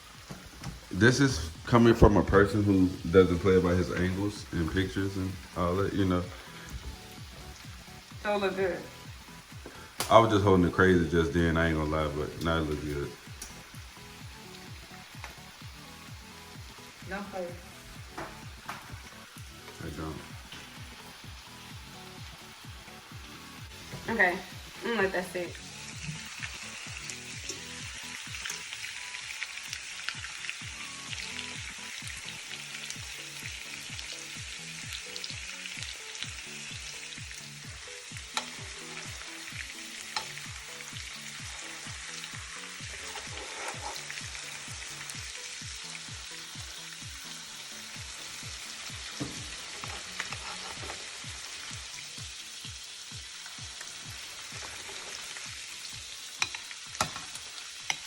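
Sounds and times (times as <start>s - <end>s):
food sizzling in a frying pan: 0.0s - 58.0s.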